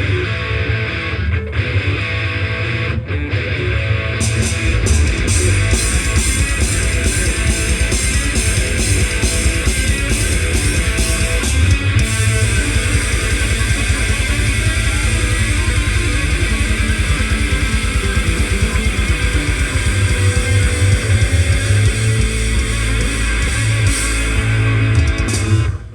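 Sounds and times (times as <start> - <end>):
heavy rock music: 0.0 - 25.9
fast regular high beat: 4.5 - 25.4.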